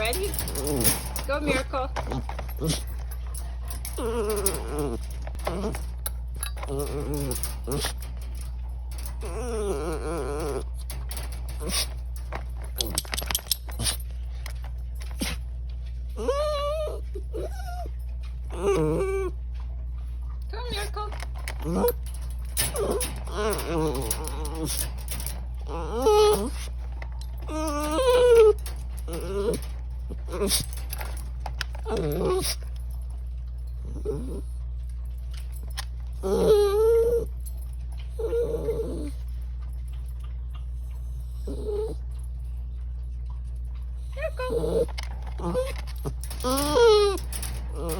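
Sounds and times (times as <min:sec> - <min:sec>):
dog whining and yowling: 0:00.0 - 0:02.8, 0:03.7 - 0:05.8, 0:08.9 - 0:11.8, 0:16.2 - 0:19.5, 0:21.5 - 0:26.8, 0:27.4 - 0:30.8, 0:31.8 - 0:32.6, 0:33.8 - 0:34.6, 0:36.2 - 0:37.5, 0:38.1 - 0:39.2, 0:41.4 - 0:42.1, 0:44.2 - 0:47.9
steady low hum: 0:00.0 - 0:47.9.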